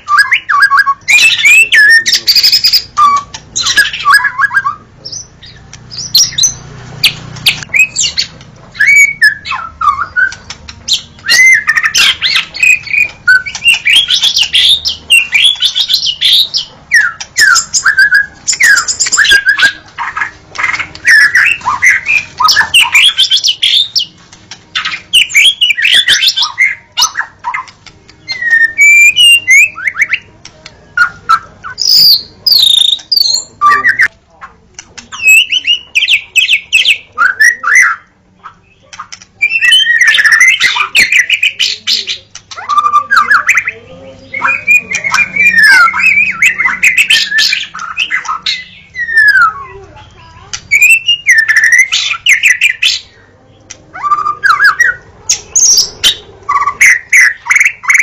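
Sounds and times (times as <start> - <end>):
bird singing whistled song: 0.0 - 24.1, 24.7 - 34.1, 35.1 - 49.8, 50.6 - 53.2, 53.9 - 58.0
sharp bird clicks: 38.4 - 41.3.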